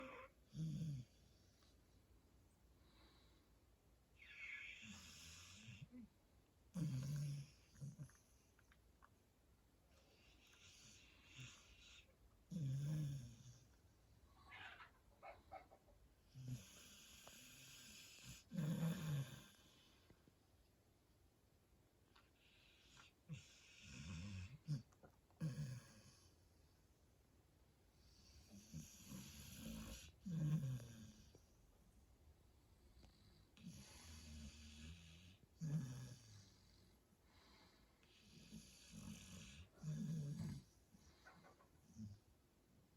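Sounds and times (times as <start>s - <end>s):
quiet breathing: 0.0s - 8.9s, 9.8s - 14.5s, 15.4s - 20.5s, 22.2s - 42.5s
man snoring: 6.8s - 7.9s, 11.3s - 13.5s, 16.4s - 19.6s, 28.5s - 31.2s, 33.6s - 36.5s, 38.3s - 40.6s.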